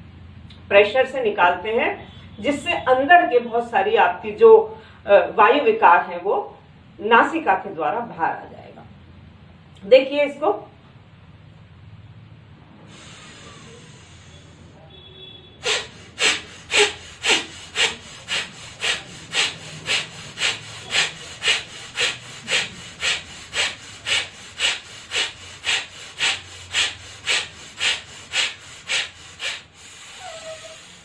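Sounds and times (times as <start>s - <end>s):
woman breathing forcefully through nose: 12.8s - 14.8s, 15.6s - 31.0s.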